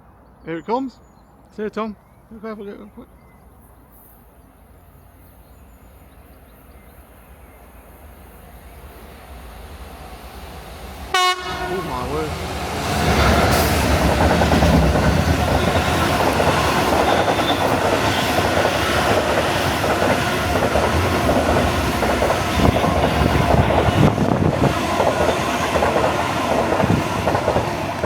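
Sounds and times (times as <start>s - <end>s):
freight wagons rolling past: 10.0s - 28.0s.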